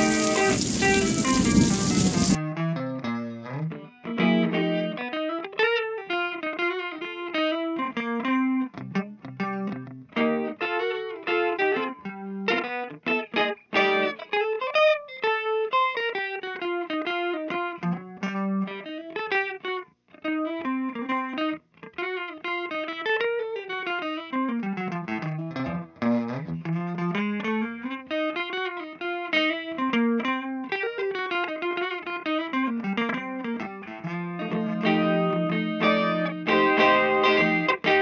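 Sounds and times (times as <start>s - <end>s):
lead guitar melody: 0.0s - 38.0s.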